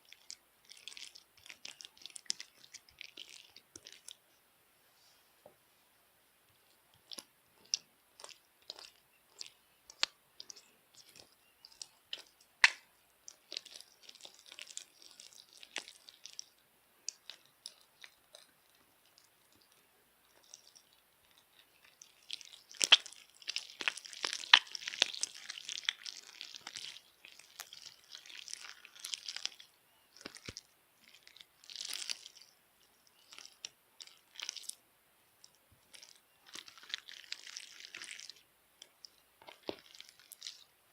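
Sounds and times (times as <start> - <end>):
slime crackling and squelching: 0.0 - 4.3, 6.5 - 40.8.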